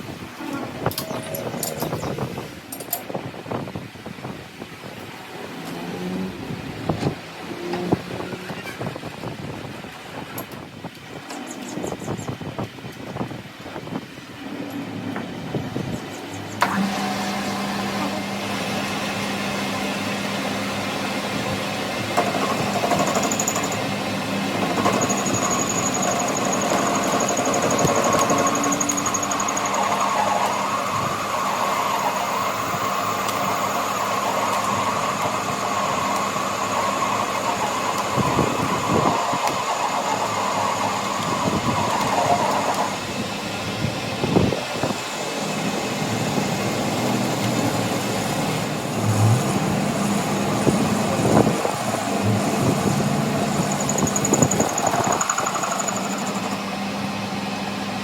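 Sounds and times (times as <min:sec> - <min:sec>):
power tool humming: 0:22.4 - 0:43.0, 0:48.8 - 0:56.6.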